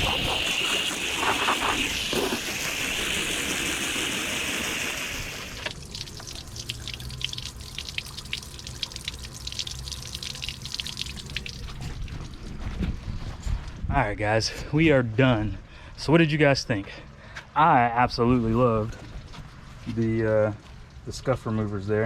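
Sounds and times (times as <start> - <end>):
water spraying onto carpet: 0.0 - 11.8
water dripping and trickling: 3.2 - 12.5.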